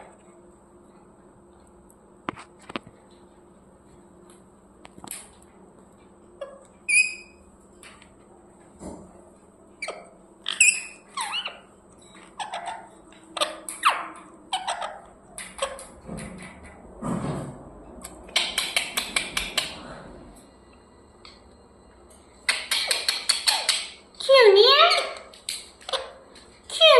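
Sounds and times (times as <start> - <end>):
parrot chirping and squeaking: 6.4 - 7.5, 9.8 - 16.0, 22.5 - 24.0, 24.7 - 26.3.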